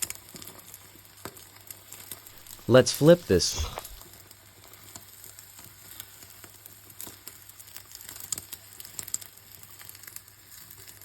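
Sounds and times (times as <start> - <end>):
omelette sizzling in a frying pan: 6.4 - 11.0.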